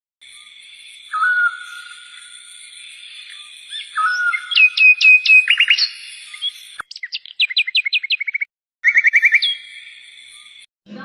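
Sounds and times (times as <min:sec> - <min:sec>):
budgerigars chirping: 0:03.8 - 0:09.6.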